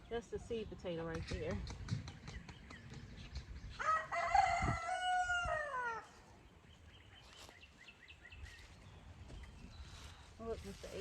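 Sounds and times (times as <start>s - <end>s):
rooster crowing: 3.8s - 6.2s.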